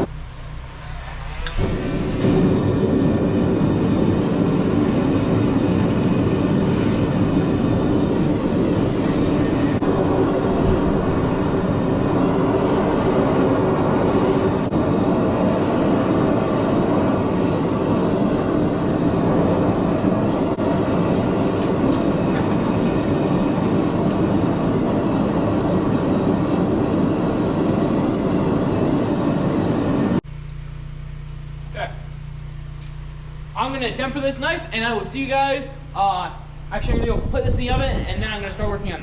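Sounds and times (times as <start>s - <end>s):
forge roaring: 0.0s - 30.2s.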